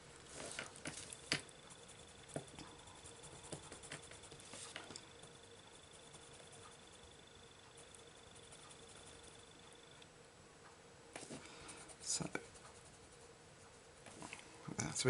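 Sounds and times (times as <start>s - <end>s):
pencil scratching on paper: 0.3s - 9.6s, 11.2s - 14.3s.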